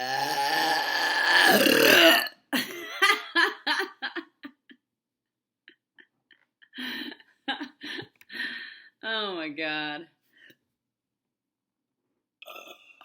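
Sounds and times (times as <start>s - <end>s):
woman burping: 0.0s - 3.2s, 12.4s - 13.0s.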